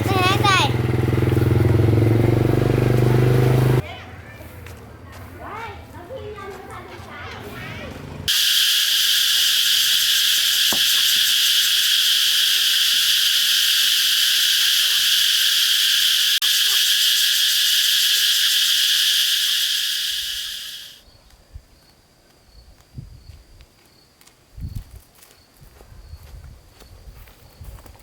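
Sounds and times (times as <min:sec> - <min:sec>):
shrill insect chorus: 0:08.3 - 0:21.0.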